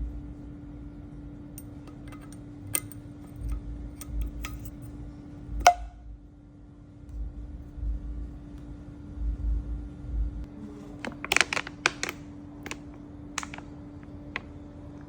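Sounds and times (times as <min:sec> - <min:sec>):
steady low hum: 0:00.0 - 0:15.0
sharp metal clink: 0:01.6 - 0:04.9
small metal tools clicking: 0:01.6 - 0:04.9.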